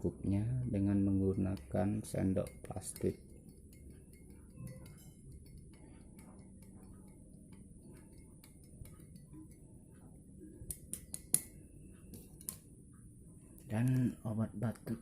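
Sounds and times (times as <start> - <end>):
spoon ticking against glass: 0.3 - 10.1.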